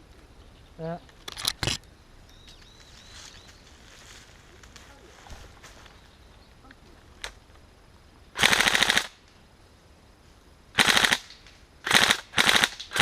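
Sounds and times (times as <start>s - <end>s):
airsoft gun firing bursts: 8.4s - 9.2s, 10.8s - 13.0s.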